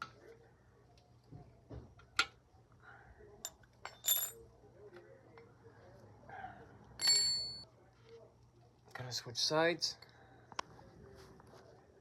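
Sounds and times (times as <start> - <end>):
metal hand tools clinking: 3.4 - 4.4, 7.0 - 7.6.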